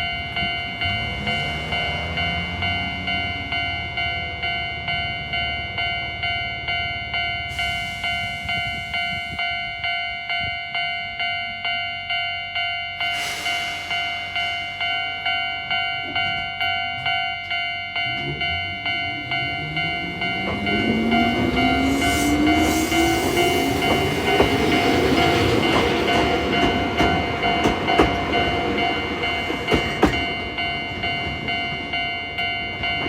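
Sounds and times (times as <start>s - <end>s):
level crossing alarm bell: 0.0s - 33.0s
hiss: 13.0s - 14.7s.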